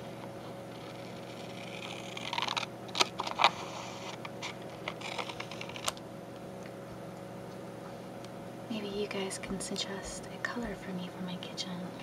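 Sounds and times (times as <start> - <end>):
card rustling: 0.1 - 6.0.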